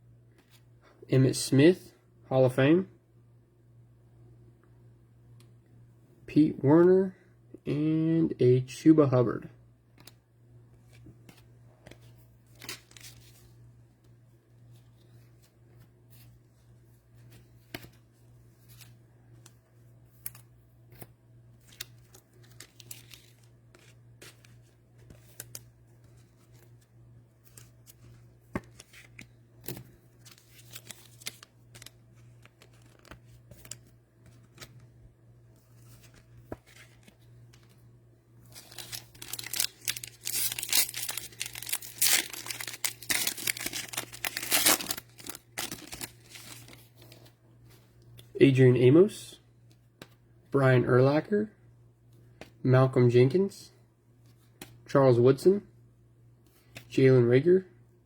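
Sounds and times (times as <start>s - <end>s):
cellophane wrapping rustling: 21.6s - 24.4s, 30.1s - 34.7s, 38.5s - 47.2s
cellophane crinkling loudly: 38.5s - 46.9s.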